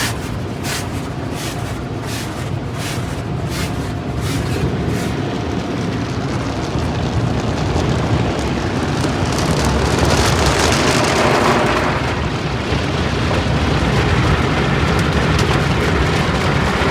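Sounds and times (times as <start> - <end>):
water spraying onto a car: 0.0 - 16.9.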